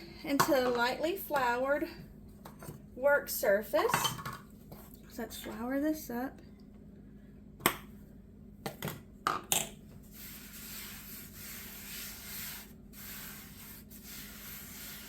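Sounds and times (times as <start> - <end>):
flour rustling hiss: 10.0 - 15.0.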